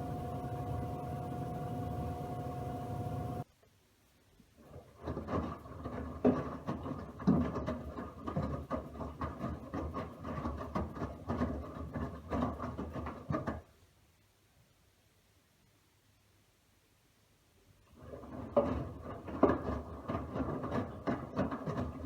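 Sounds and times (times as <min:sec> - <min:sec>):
washing machine motor rumble: 0:00.0 - 0:03.4.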